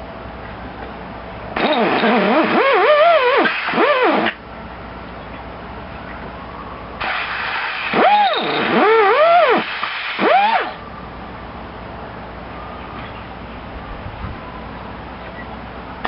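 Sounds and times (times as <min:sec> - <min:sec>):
engine recoil starter pulls: 0:01.6 - 0:04.4.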